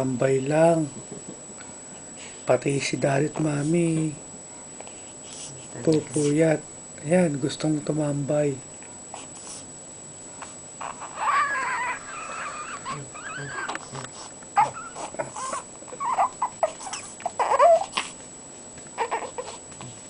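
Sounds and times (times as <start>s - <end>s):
baby whimpering and crying: 10.8s - 18.2s, 19.0s - 19.6s.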